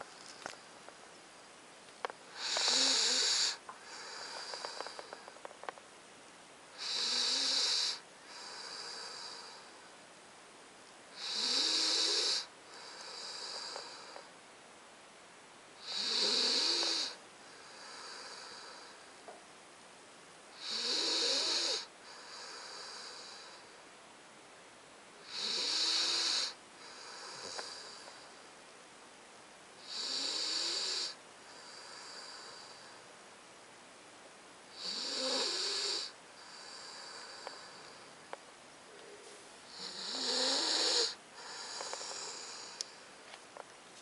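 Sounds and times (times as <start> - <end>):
puppy snoring: 2.3 - 5.4, 6.7 - 9.7, 11.1 - 14.3, 15.8 - 19.0, 20.5 - 23.7, 25.2 - 28.3, 29.8 - 32.9, 34.7 - 38.1, 39.7 - 43.0.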